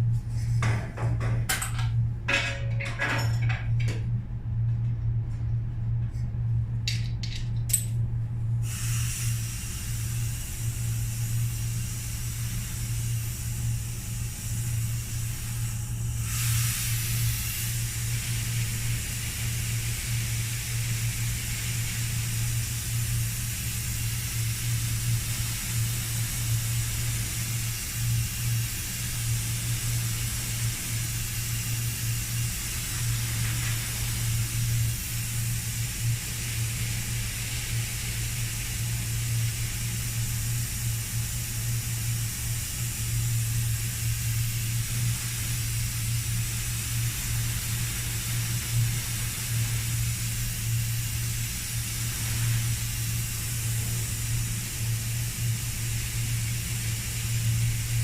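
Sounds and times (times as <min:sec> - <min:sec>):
constant low hum: 0:00.0 - 0:58.0
paint spray gun hissing: 0:08.6 - 0:58.0.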